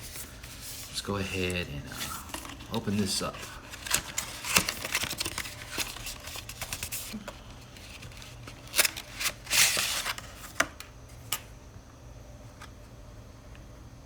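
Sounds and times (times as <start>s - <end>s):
plastic packaging rustling: 0.0s - 10.9s
plastic tearing: 0.2s - 10.8s.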